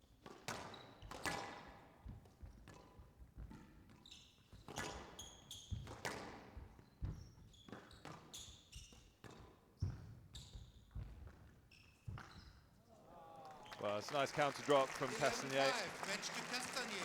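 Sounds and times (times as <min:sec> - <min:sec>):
shoes squeaking on court floor: 0:04.0 - 0:05.9, 0:06.8 - 0:14.0.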